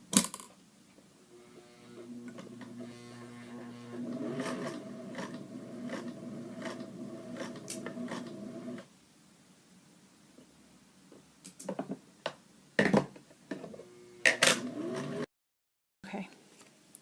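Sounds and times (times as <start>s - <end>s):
sewing machine motor hum: 1.3s - 8.8s, 13.8s - 15.3s
sewing machine clicks: 4.0s - 8.8s.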